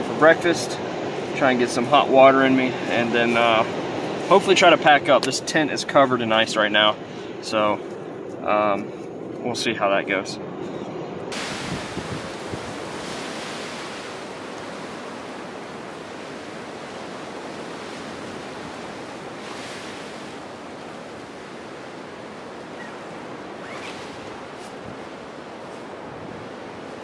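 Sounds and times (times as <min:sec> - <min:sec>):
wind rushing: 0:11.2 - 0:15.9.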